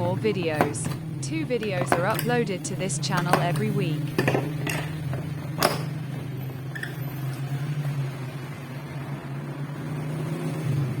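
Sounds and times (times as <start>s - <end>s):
low mechanical hum: 0.0s - 11.0s.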